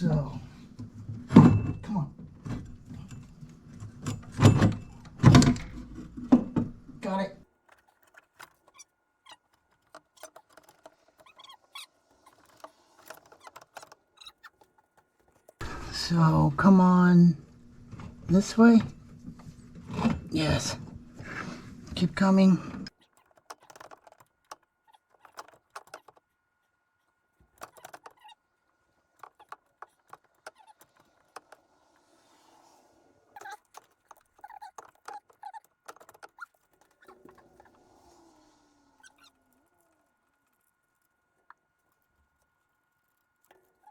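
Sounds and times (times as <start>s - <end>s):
short squeak: 10.1s - 12.6s.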